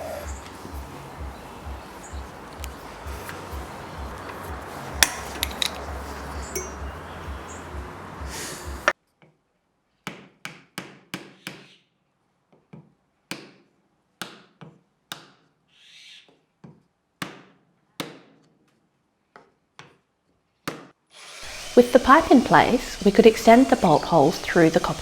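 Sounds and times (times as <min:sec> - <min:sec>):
hammer tapping on wood and pipe: 0:04.2 - 0:07.0.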